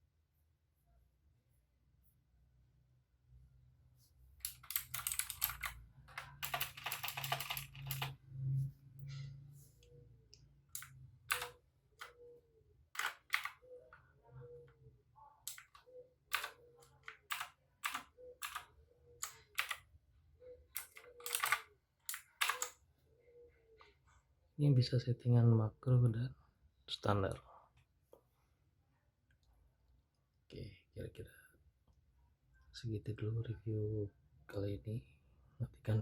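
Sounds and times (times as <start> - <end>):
mechanical keyboard typing: 4.4 - 8.2, 10.7 - 12.2, 12.9 - 13.8, 15.4 - 19.8, 20.7 - 22.8.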